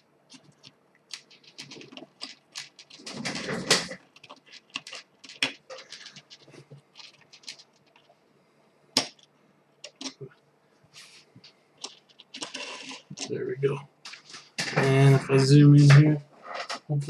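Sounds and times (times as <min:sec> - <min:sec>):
handling rustle: 0:00.3 - 0:08.2.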